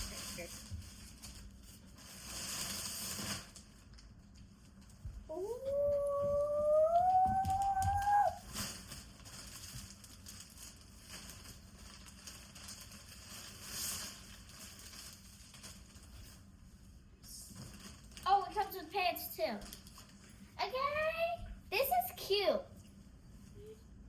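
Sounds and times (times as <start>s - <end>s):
plastic packaging crinkling: 0.0s - 5.1s, 7.6s - 16.6s, 17.5s - 18.9s, 19.5s - 20.4s.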